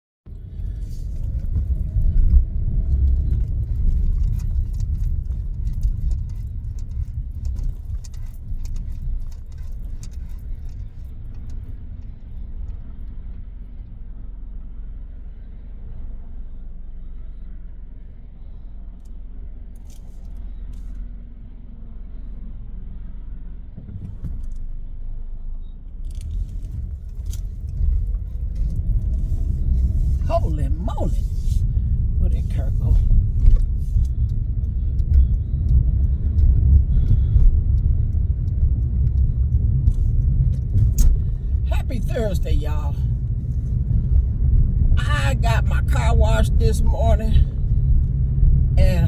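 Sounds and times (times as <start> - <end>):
gusty wind buffeting a car: 0.3 - 16.8, 18.2 - 49.0
sharp ticks: 33.0 - 41.6.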